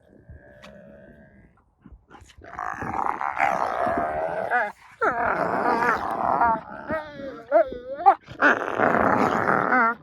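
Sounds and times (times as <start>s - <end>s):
puppies growling and whining: 2.8s - 10.0s.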